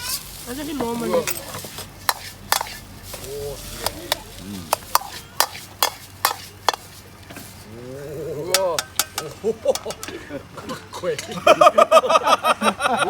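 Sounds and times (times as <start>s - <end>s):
metal utensil clanking on wok: 0.0s - 7.5s, 8.5s - 10.2s
faint sizzle: 0.0s - 10.4s.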